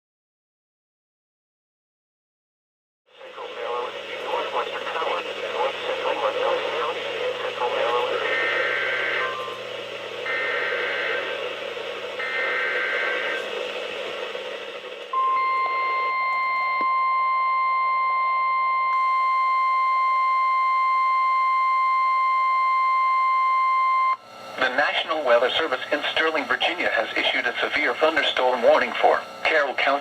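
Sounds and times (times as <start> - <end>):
radio hiss: 3.1 - 16.2, 24.4 - 30.0
digital data bursts: 3.4 - 9.5, 10.2 - 14.4.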